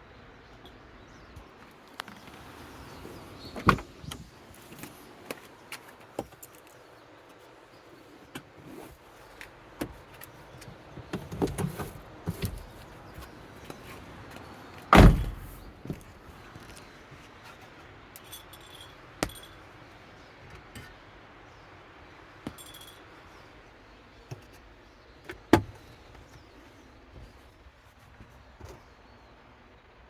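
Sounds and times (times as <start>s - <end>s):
car door shutting: 3.5s - 4.3s, 14.9s - 16.0s.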